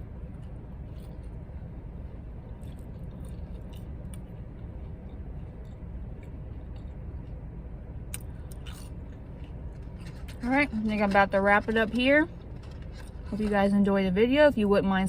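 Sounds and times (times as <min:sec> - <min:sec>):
soft chewing: 0:00.0 - 0:13.9
low rumble in car cabin: 0:00.0 - 0:15.0
small clicks from eating: 0:08.1 - 0:13.8.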